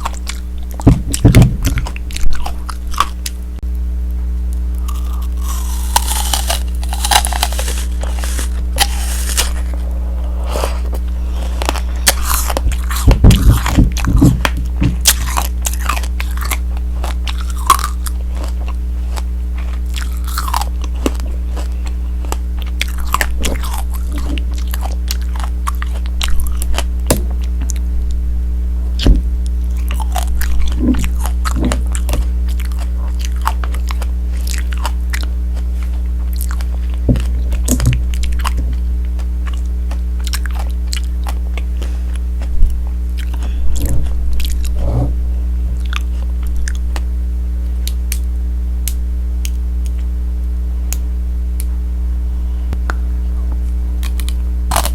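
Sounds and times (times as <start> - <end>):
steady low hum: 0.0 - 54.9
candy shell crunching: 4.8 - 10.0, 10.6 - 13.7, 15.1 - 26.9, 54.0 - 54.9.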